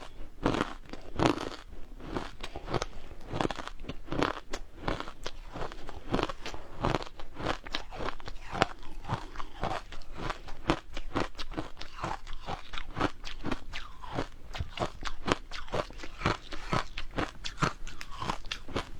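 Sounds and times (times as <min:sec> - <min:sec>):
ice cubes crunching in mouth: 0:00.5 - 0:18.9.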